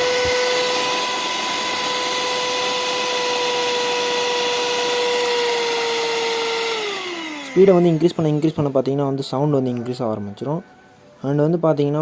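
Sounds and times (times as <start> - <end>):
electric hand mixer whining: 0.0 - 9.3.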